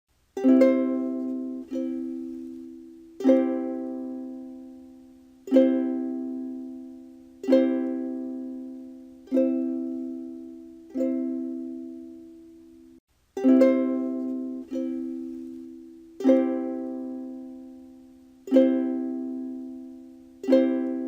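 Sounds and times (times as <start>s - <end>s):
ukulele strumming: 0.3s - 21.0s.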